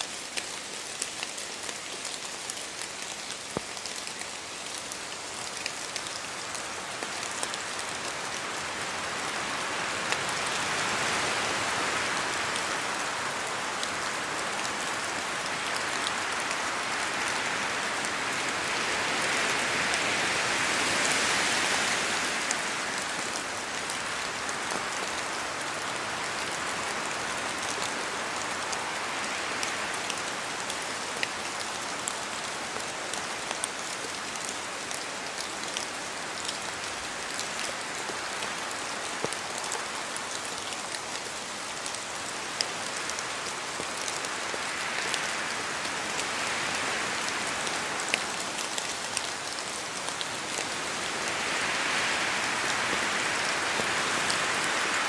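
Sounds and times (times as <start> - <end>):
rain in a forest: 0.0 - 55.0
drops ticking from trees: 0.1 - 7.6
wind gusts: 42.0 - 55.0.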